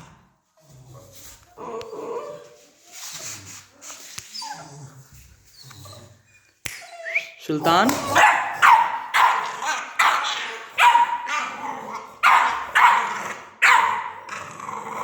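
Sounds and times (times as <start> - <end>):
puppy barking: 8.0 - 11.6, 12.2 - 14.3.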